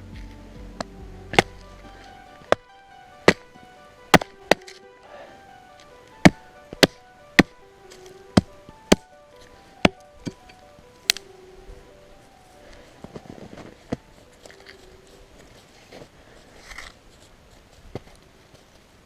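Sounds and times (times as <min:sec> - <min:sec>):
background music: 0:00.0 - 0:16.1
axe chopping wood: 0:01.3 - 0:01.6, 0:03.2 - 0:03.5, 0:04.1 - 0:04.8, 0:06.2 - 0:07.6.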